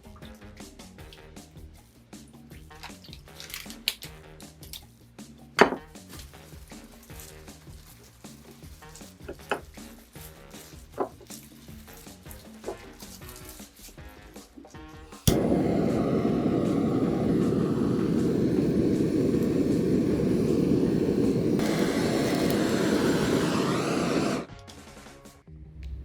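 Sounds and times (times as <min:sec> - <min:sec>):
kitchen appliance motor running: 0:15.3 - 0:24.5.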